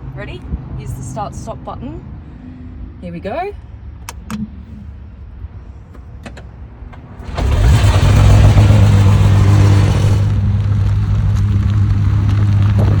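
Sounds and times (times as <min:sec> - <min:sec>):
car engine starting and idling: 0:04.0 - 0:13.0.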